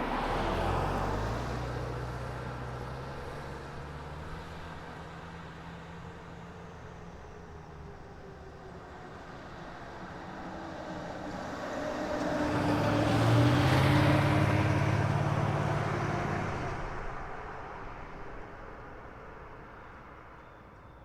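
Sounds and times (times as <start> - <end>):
car driving past: 0.0 - 4.2, 11.6 - 18.6.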